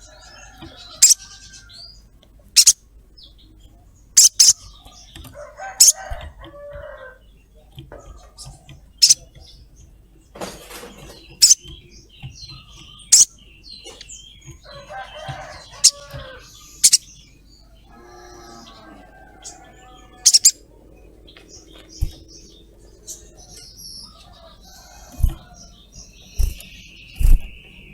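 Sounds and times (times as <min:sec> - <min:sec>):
lower-pitched bird chattering: 0:00.0 - 0:06.2, 0:07.2 - 0:09.9, 0:10.9 - 0:27.9
bird giving sharp high calls: 0:00.9 - 0:01.5, 0:02.6 - 0:02.8, 0:04.2 - 0:04.7, 0:09.0 - 0:09.2, 0:11.4 - 0:11.6, 0:13.1 - 0:13.4, 0:19.4 - 0:20.6.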